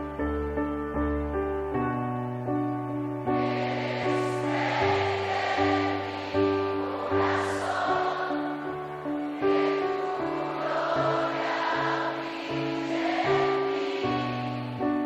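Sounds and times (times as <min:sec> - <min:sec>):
choir singing held chords: 0:03.2 - 0:15.0.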